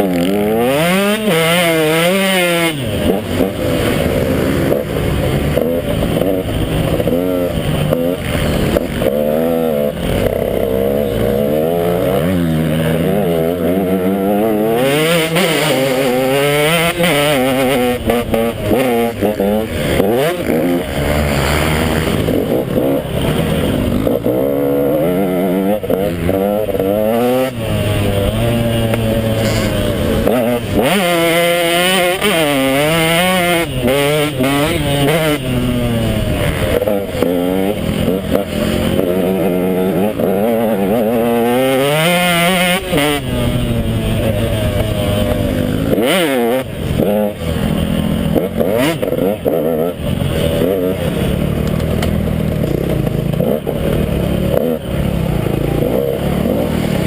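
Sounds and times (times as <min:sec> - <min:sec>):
dirt bike engine revving: 0:00.0 - 0:57.0.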